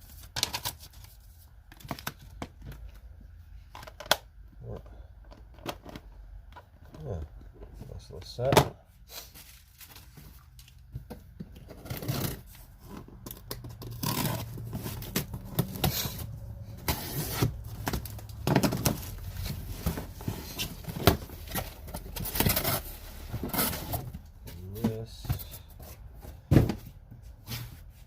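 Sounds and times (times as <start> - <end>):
packaging rustling and clicking: 9.4 - 24.9.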